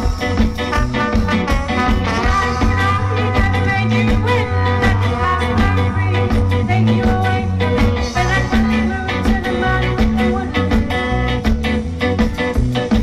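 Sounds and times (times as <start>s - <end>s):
ska-rock band music: 0.0s - 13.0s
person singing: 2.0s - 11.8s.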